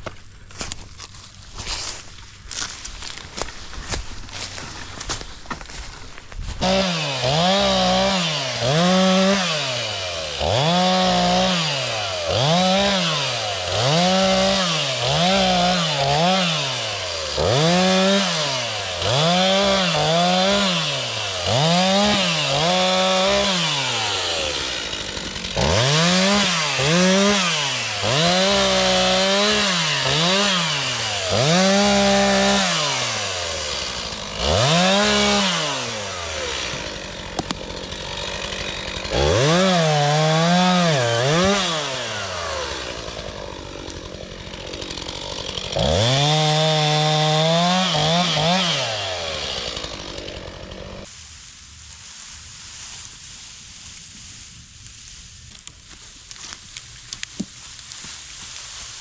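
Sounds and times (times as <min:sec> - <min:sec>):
chainsaw engine revving: 0:06.6 - 0:51.1.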